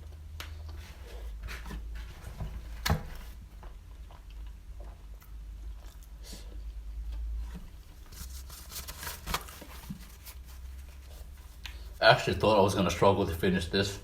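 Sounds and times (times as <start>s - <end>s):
chewing and mouth noises: 3.6s - 8.0s.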